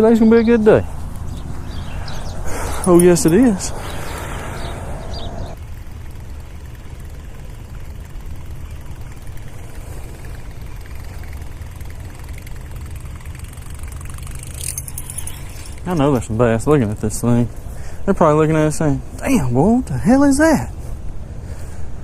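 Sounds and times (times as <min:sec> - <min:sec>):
wind buffeting microphone: 0:00.0 - 0:05.6.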